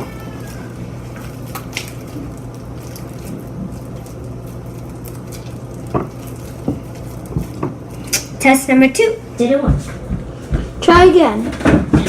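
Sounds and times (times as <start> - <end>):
slime squelching: 0.0 - 9.1
steady low hum: 0.0 - 12.0.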